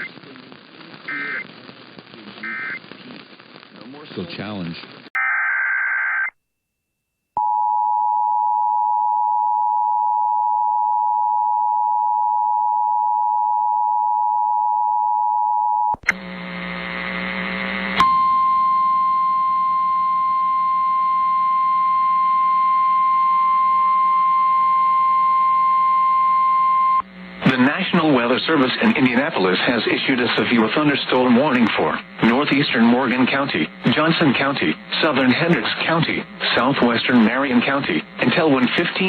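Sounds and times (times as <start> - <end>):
radio static and hum: 0.0 - 5.2, 16.0 - 18.1, 26.9 - 39.0
two-tone alarm signal: 18.0 - 27.1.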